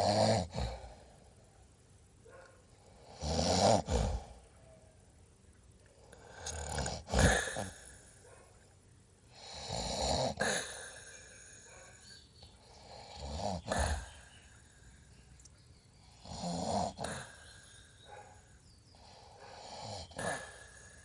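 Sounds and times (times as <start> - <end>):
loud snoring: 0.0 - 1.0, 2.9 - 4.4, 6.2 - 8.0, 9.3 - 11.7, 12.6 - 14.4, 16.0 - 17.8, 19.0 - 21.0.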